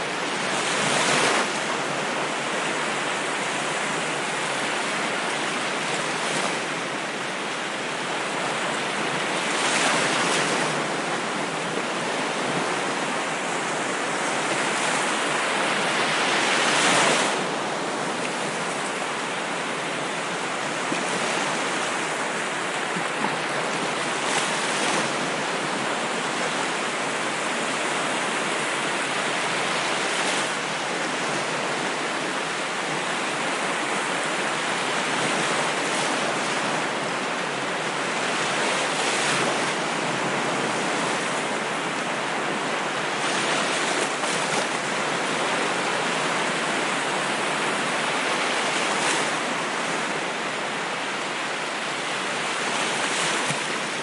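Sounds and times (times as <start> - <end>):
ocean waves washing ashore: 0.0 - 54.0.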